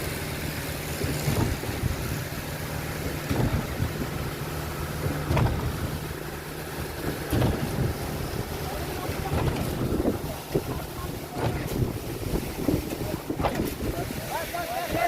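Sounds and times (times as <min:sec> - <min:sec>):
machinery engine running: 0:00.0 - 0:14.4
short knocks: 0:03.2 - 0:04.3, 0:05.0 - 0:06.0, 0:07.2 - 0:08.0.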